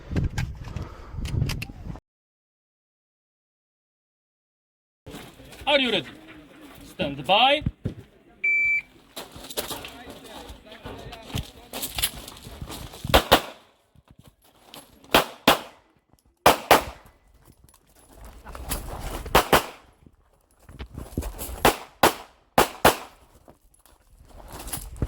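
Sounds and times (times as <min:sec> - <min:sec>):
pistol shots: 0:13.1 - 0:13.7, 0:15.1 - 0:15.8, 0:16.4 - 0:17.1, 0:19.3 - 0:19.9, 0:21.6 - 0:23.2.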